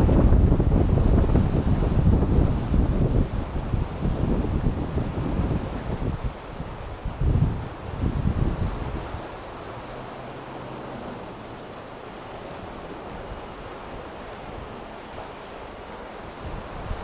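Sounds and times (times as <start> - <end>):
rushing wind: 0.0 - 17.0
waves breaking: 0.0 - 17.0
wind buffeting microphone: 0.0 - 17.0.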